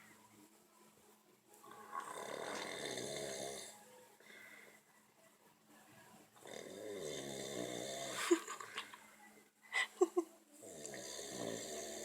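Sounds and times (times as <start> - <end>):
person snoring: 1.7 - 3.8, 6.4 - 8.4, 10.6 - 12.0.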